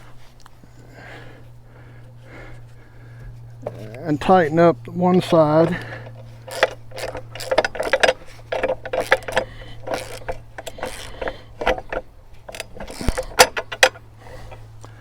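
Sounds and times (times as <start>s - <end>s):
hand ratchet clicking: 5.1s - 14.6s.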